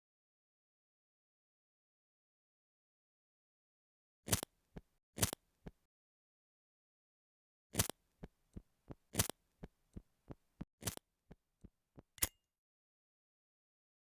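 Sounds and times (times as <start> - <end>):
sharp clicks: 12.2 - 12.4.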